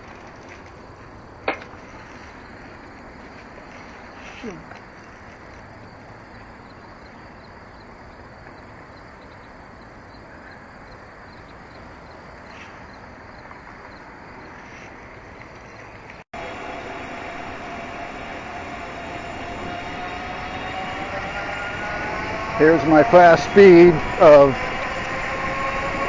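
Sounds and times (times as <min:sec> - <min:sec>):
wind and tyre noise: 0:00.0 - 0:26.0
electric motor whine: 0:16.4 - 0:26.0.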